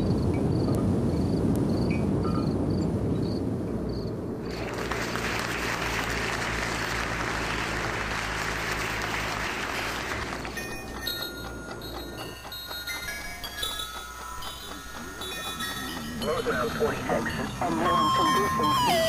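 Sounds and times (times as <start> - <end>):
crowd applauding: 4.4 - 19.0.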